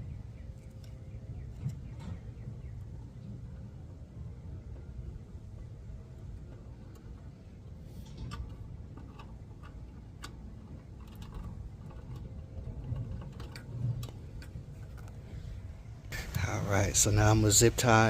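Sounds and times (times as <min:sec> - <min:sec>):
steady low rumble: 0:00.0 - 0:18.0
hands clicking and tapping wiring: 0:08.0 - 0:15.2.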